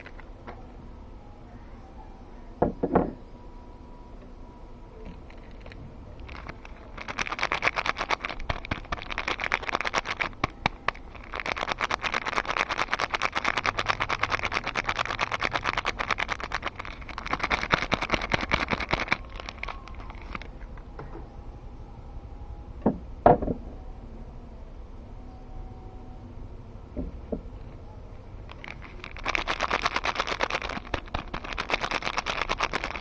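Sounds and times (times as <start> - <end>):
wrapper crinkling: 0.0 - 0.3, 5.2 - 20.7, 28.4 - 33.0.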